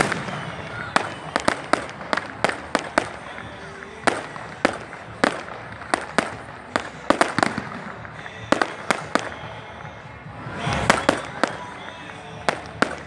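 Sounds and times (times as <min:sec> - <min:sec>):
fireworks exploding: 0:00.0 - 0:13.0.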